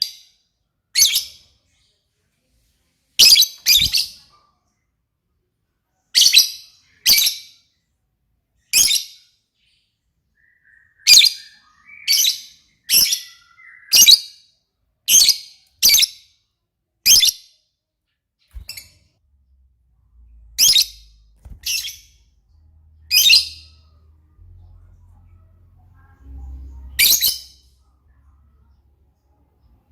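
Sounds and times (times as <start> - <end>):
lovebird chirping: 3.2 - 4.3, 8.7 - 14.5, 18.5 - 25.2, 26.2 - 29.9.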